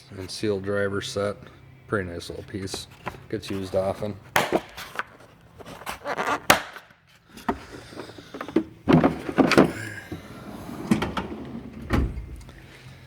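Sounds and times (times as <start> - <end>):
drawer sliding on runners: 8.9 - 12.2.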